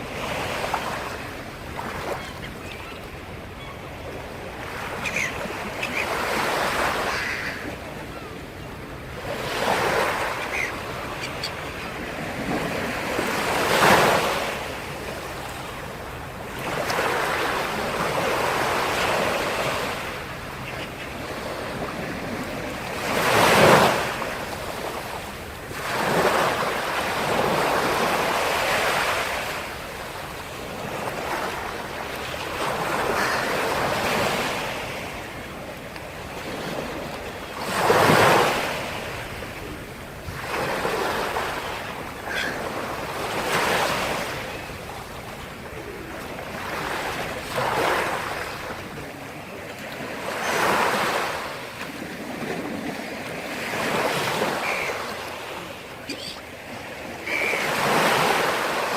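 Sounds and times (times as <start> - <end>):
waves breaking on shore: 0.0 - 58.9.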